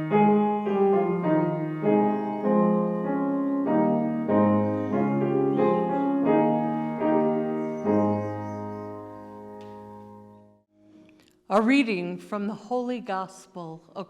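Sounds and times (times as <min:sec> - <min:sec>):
piano playing slow chords: 0:00.0 - 0:10.7.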